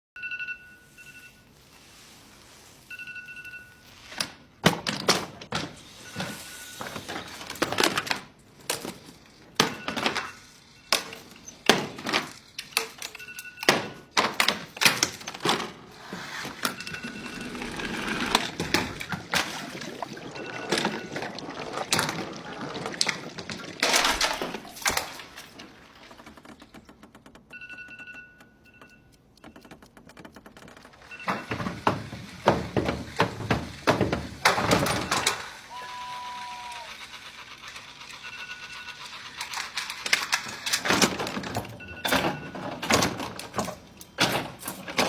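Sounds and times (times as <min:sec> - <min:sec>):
alarm clock beeping: 0:00.2 - 0:01.5, 0:02.9 - 0:04.1, 0:13.1 - 0:14.2, 0:16.4 - 0:21.8, 0:27.5 - 0:30.4, 0:31.0 - 0:31.8, 0:38.0 - 0:39.4, 0:41.8 - 0:43.0.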